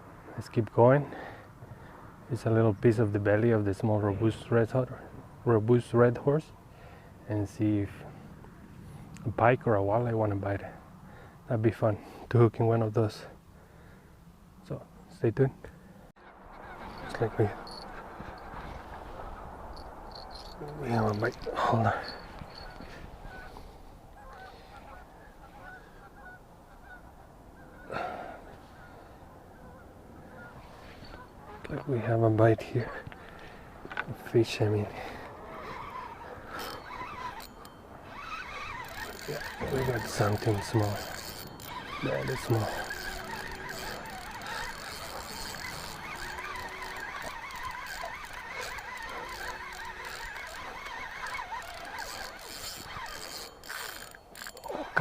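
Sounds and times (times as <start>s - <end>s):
geese honking: 16.2s - 27.9s, 28.6s - 31.8s, 35.0s - 53.2s
fishing reel gears whining: 16.6s - 18.7s, 19.6s - 24.4s, 35.0s - 55.0s.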